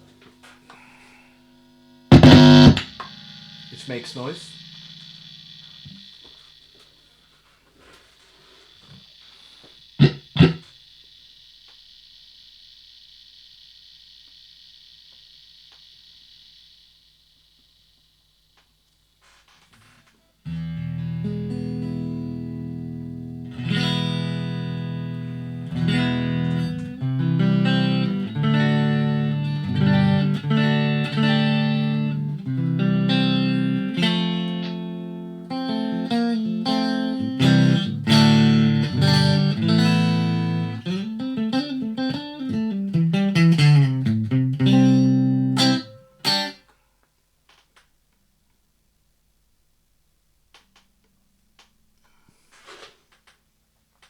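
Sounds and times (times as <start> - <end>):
clean electric guitar: 0.0 - 6.4, 10.0 - 10.7, 20.4 - 46.6.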